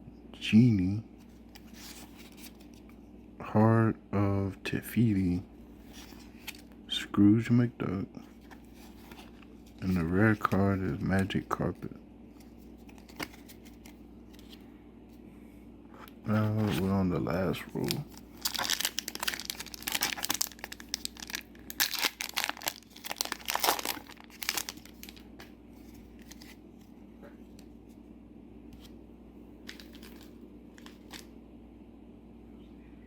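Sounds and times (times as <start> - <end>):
cards being handled: 1.2 - 3.0, 8.3 - 14.7, 16.3 - 27.7, 29.6 - 31.3
foil wrapper tearing and crinkling: 17.7 - 25.3.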